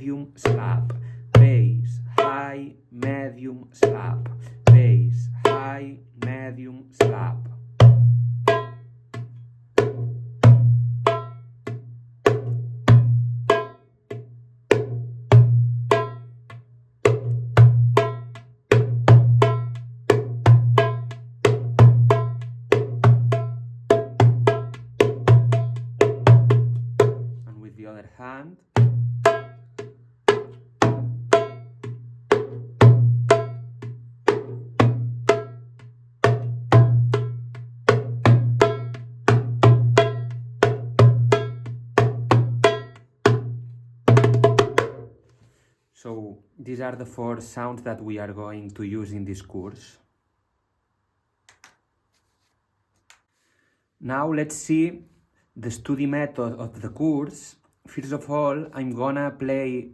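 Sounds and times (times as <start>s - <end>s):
darbuka strokes: 0.4s - 27.4s, 28.8s - 45.2s.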